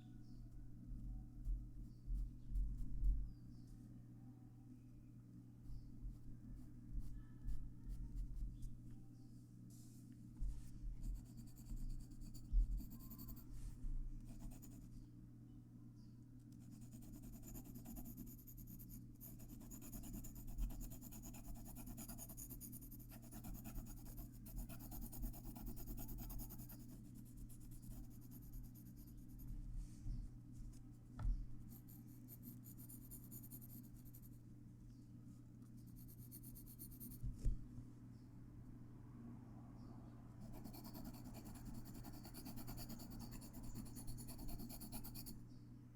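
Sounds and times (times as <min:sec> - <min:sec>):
steady low hum: 0:00.0 - 0:45.9
pencil scratching on paper: 0:11.0 - 0:13.5, 0:14.3 - 0:14.9, 0:16.6 - 0:29.4, 0:31.7 - 0:34.4, 0:35.8 - 0:37.2, 0:40.4 - 0:45.4.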